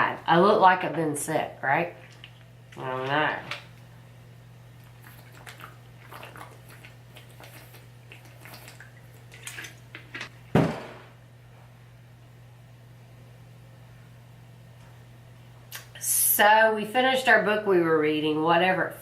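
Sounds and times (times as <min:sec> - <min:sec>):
steady low hum: 0:00.0 - 0:19.0
sharp knock: 0:10.6 - 0:11.1.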